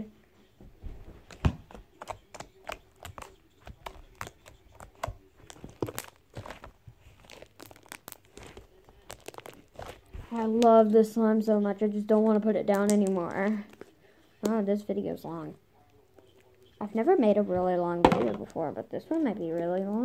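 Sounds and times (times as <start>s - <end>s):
slime clicking and popping: 1.4s - 10.0s.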